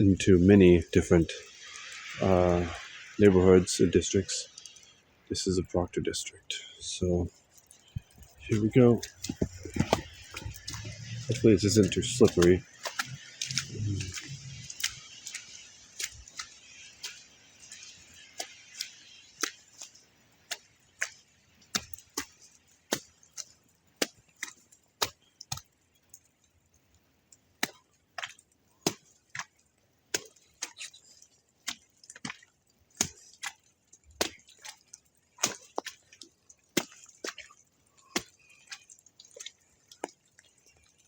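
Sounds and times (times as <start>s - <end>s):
faint hiss: 0.0s - 21.9s
footsteps crunching in snow: 7.0s - 25.6s.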